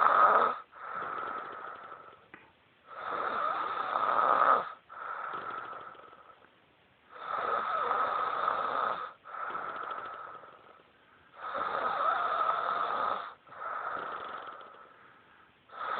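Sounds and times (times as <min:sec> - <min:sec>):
person snoring: 0:00.0 - 0:02.2, 0:02.9 - 0:06.5, 0:07.1 - 0:15.1, 0:15.7 - 0:15.9
soft breath: 0:09.1 - 0:12.5, 0:13.3 - 0:15.8.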